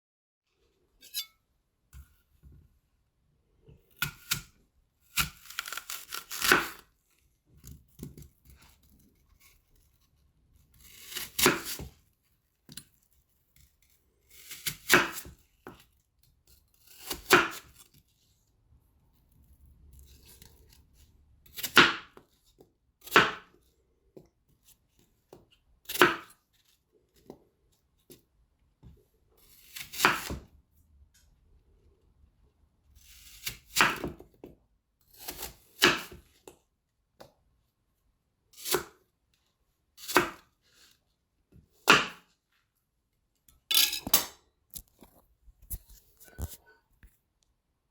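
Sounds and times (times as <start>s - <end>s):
knife cutting an apple: 3.9s - 18.0s, 19.8s - 23.6s, 24.6s - 27.4s, 29.4s - 30.6s, 33.0s - 36.6s, 38.5s - 39.1s, 40.0s - 42.3s, 43.7s - 47.2s.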